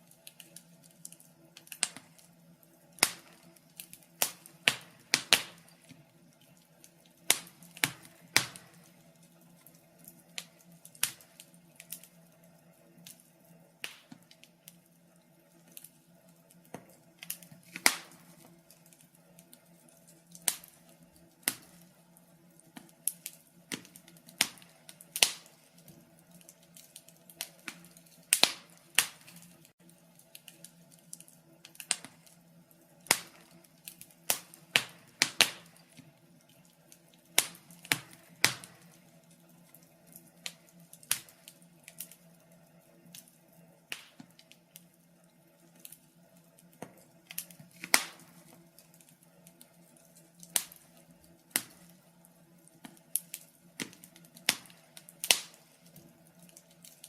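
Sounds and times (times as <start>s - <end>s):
wood fire crackling: 0.0s - 57.0s.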